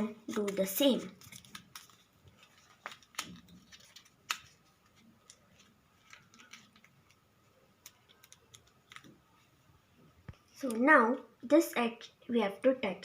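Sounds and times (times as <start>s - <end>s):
paper being folded and creased: 0.0s - 7.2s.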